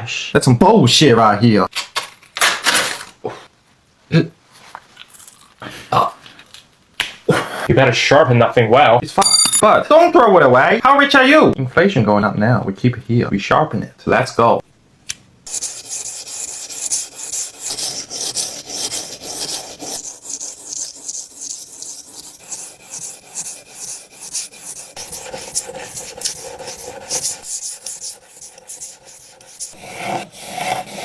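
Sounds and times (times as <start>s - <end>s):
scraper blade being sharpened: 15.5s - 31.0s.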